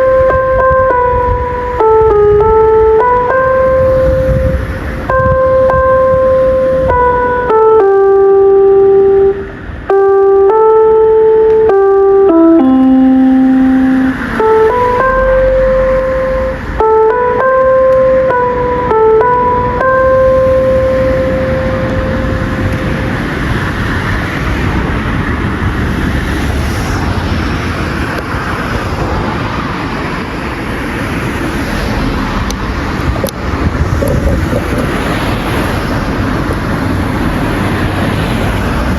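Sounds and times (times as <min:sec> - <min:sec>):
loudspeaker chime note: 0:00.0 - 0:23.3
outdoor traffic noise: 0:00.0 - 0:38.9.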